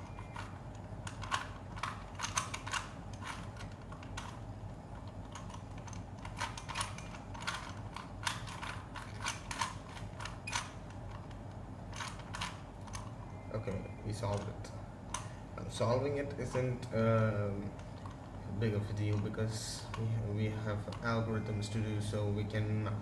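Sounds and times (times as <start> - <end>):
puzzle cube twisting clicks: 0.0 - 13.4.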